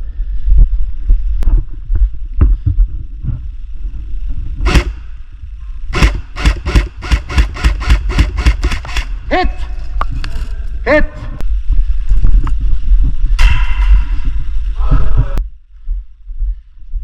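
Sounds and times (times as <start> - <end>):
low rumble: 0.0 - 17.0
airsoft gun shots: 4.7 - 5.2, 6.0 - 9.3.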